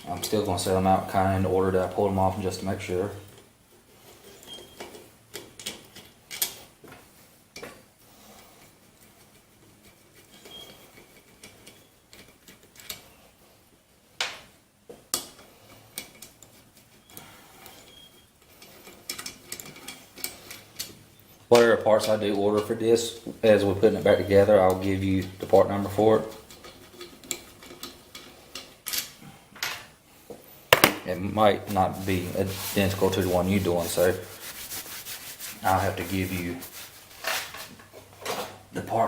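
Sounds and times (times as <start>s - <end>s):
bolts set down: 30.7s - 31.1s.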